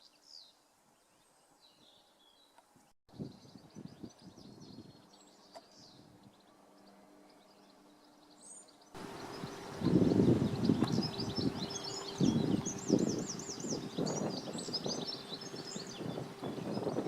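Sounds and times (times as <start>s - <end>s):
songbirds twittering and chirping: 0.0s - 17.0s
faint steady hum: 6.0s - 17.0s.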